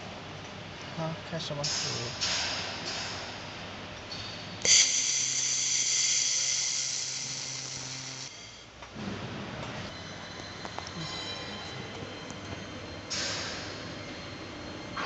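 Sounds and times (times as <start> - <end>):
laser welder whine and hiss: 4.6 - 8.8, 13.1 - 14.8.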